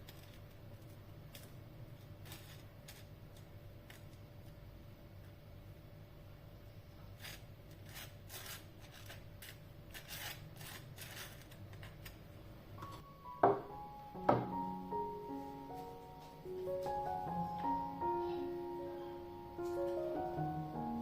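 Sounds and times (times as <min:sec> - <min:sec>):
gentle piano music: 0:12.7 - 0:21.0.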